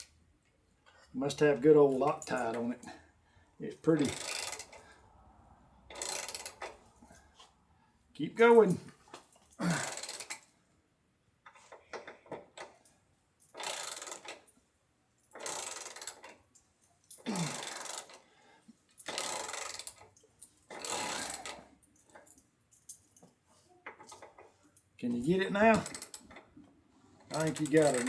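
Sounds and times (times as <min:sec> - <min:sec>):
ratchet wrench clicking: 0:04.0 - 0:04.9, 0:05.9 - 0:06.8, 0:09.8 - 0:10.5, 0:13.5 - 0:14.4, 0:15.4 - 0:16.4, 0:17.2 - 0:18.2, 0:19.0 - 0:20.1, 0:20.7 - 0:21.6, 0:25.7 - 0:26.4, 0:27.3 - 0:28.0.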